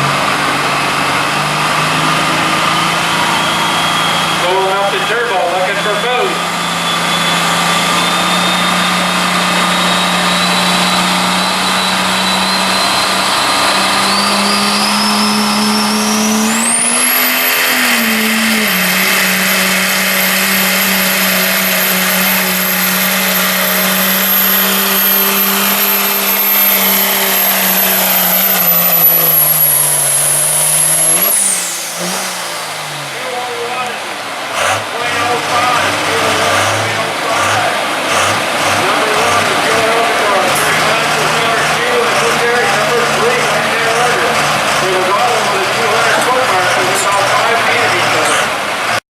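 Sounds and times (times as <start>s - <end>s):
diesel truck engine under load: 0.0s - 49.0s
high turbo whistle: 2.8s - 34.0s.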